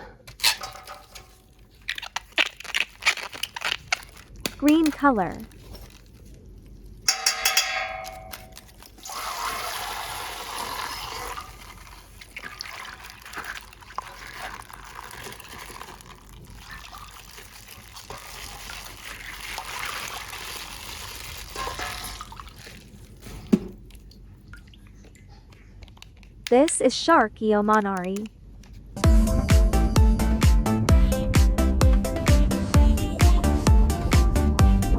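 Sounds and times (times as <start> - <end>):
water pouring and trickling: 8.0 - 25.2.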